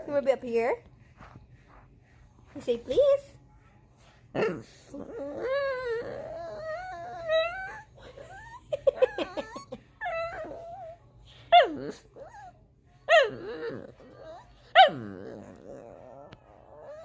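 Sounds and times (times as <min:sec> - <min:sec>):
dog whining: 0:04.4 - 0:17.0
dog crying: 0:04.6 - 0:17.0
dog yipping: 0:13.1 - 0:17.0.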